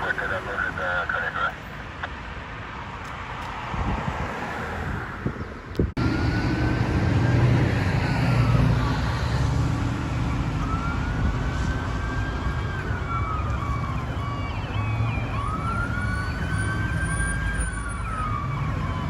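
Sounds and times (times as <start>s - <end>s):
heavy vehicle engine rumble: 0.0s - 2.0s
outdoor noise: 0.0s - 19.0s
electronic siren wailing: 6.1s - 19.0s.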